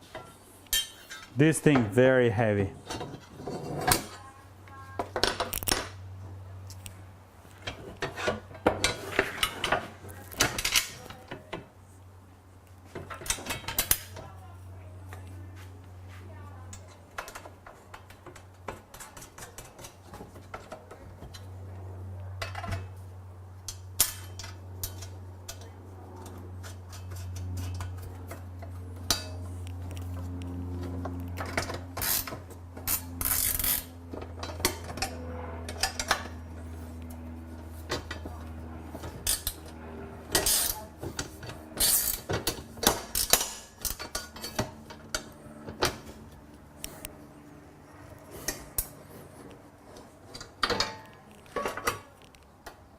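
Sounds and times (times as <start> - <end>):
low hum: 21.3 - 51.4.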